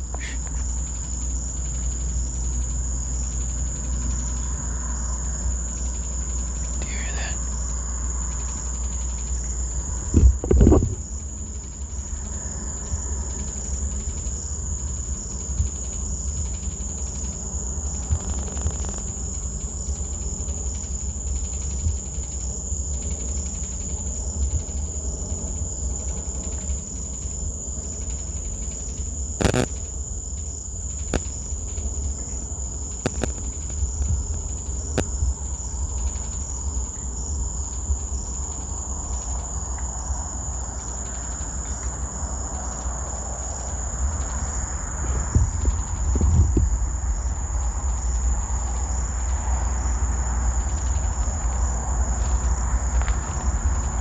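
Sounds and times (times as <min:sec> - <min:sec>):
high-pitched insect trill: 0:00.0 - 0:54.0
sharp clicks: 0:29.4 - 0:29.7, 0:33.0 - 0:33.8
low rumble: 0:44.5 - 0:54.0.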